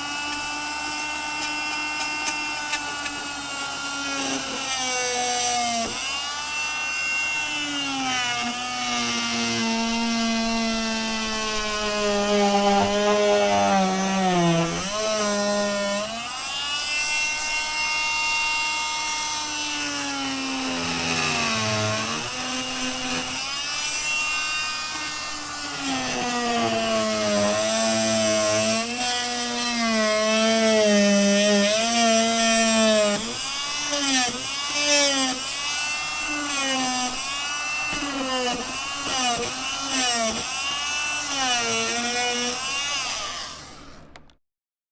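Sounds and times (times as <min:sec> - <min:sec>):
oscillating saw motor whine: 0:06.3 - 0:29.0.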